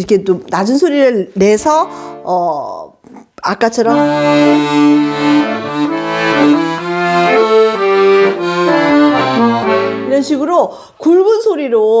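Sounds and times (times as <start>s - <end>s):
accordion playing chords: 1.7s - 2.6s, 3.8s - 10.9s.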